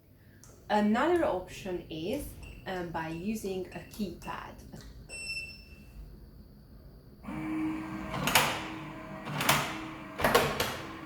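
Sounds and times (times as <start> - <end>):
lock motor hum: 7.2 - 11.0.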